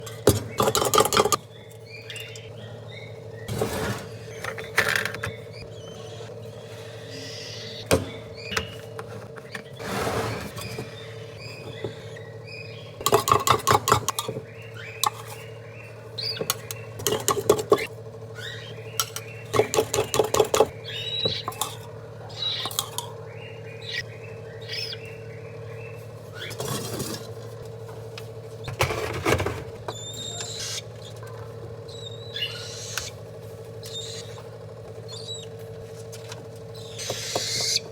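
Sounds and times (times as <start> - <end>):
parrot chirping and chattering: 11.0 - 26.6, 29.9 - 33.2, 33.8 - 36.0, 36.7 - 37.9.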